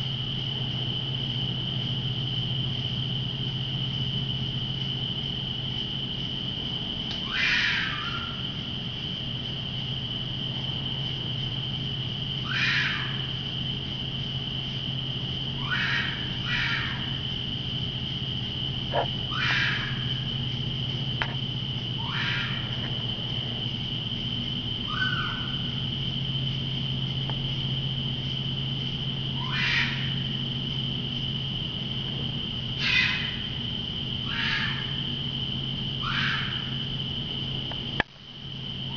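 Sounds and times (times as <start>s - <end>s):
low steady hum: 0.0s - 38.9s
night insects droning: 0.0s - 38.9s
harsh animal call: 7.2s - 8.4s, 12.4s - 13.4s, 15.6s - 17.2s, 18.9s - 20.3s, 22.0s - 22.9s, 29.4s - 30.3s, 32.8s - 33.6s, 34.2s - 35.1s, 36.0s - 36.9s.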